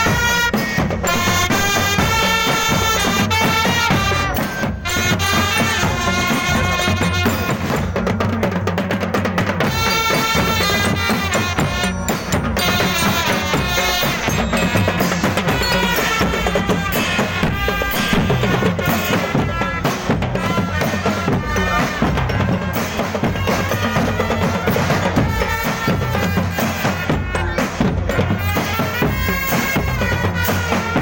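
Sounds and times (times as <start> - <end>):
music with busy drums: 0.0 - 31.0
bending melody line: 9.6 - 28.4.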